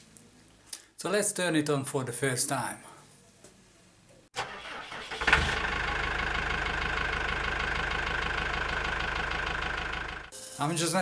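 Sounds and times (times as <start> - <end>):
car engine starting and idling: 4.4 - 10.3.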